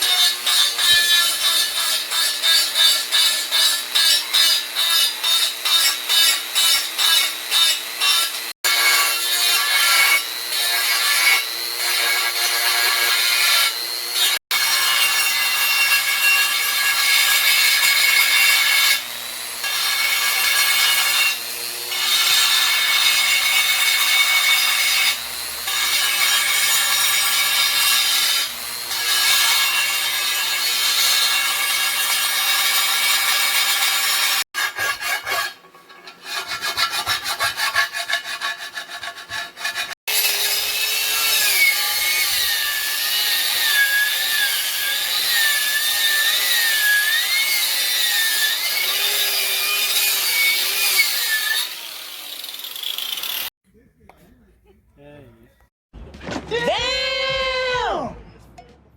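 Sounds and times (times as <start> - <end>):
tool rasping against surface: 0.0 - 18.9, 30.8 - 40.6.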